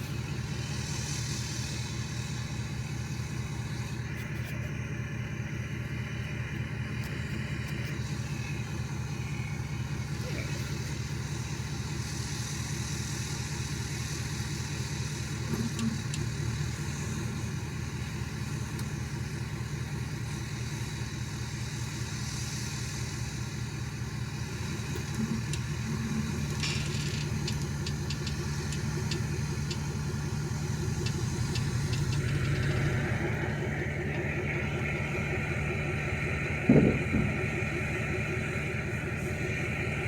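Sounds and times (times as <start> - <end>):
vehicle engine idling: 0.0 - 40.0.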